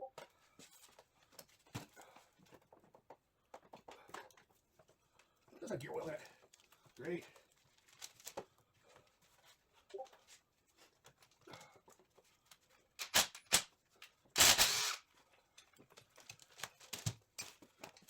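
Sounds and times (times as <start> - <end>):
tools and parts clicking: 13.0 - 16.7
loud rasping burst: 14.4 - 15.0.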